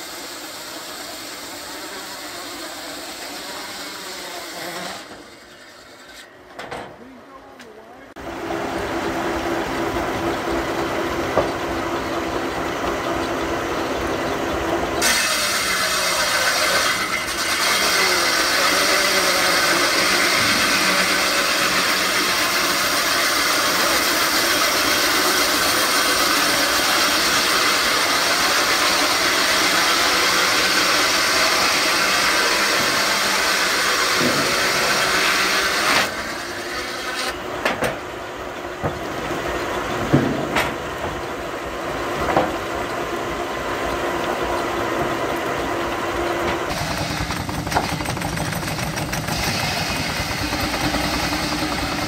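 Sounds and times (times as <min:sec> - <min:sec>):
loud steam hissing: 0:00.0 - 0:06.1, 0:15.0 - 0:36.7, 0:46.7 - 0:52.0
sawmill machinery humming: 0:00.0 - 0:52.0.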